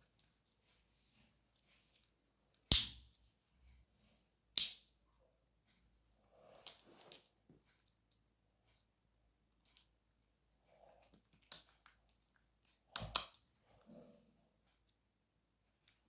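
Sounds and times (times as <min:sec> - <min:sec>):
soft rustle: 0:00.0 - 0:02.6, 0:05.7 - 0:08.1
sharp plastic snaps: 0:02.7 - 0:03.1, 0:04.6 - 0:04.9.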